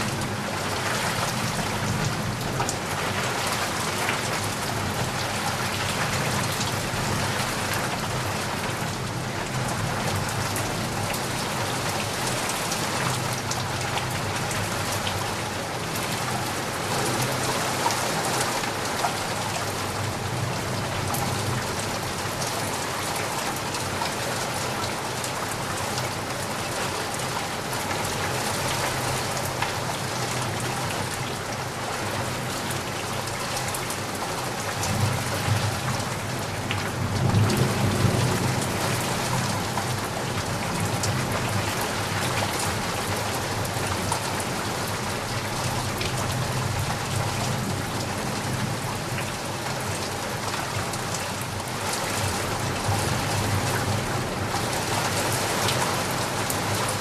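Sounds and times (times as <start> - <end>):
heavy rain: 0.0 - 57.0
raindrops pattering on a surface: 0.0 - 57.0.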